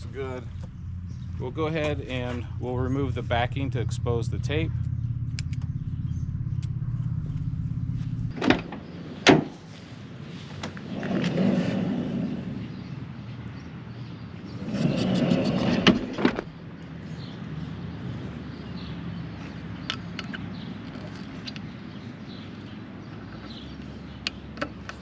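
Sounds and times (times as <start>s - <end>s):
low steady hum: 0.0s - 8.9s
van sliding door rumbling: 7.2s - 9.6s, 14.5s - 16.5s
door clunks: 8.3s - 9.6s.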